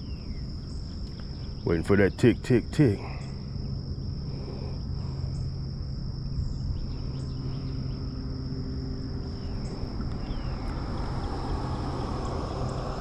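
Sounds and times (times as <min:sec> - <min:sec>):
high-pitched insect drone: 0:02.6 - 0:13.0
faint bird chirps: 0:06.3 - 0:08.3.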